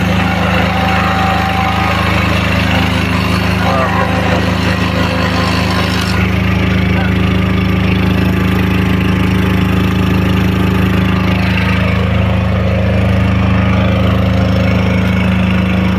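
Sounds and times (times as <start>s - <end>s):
concrete vibrator droning hum: 0.0s - 15.9s.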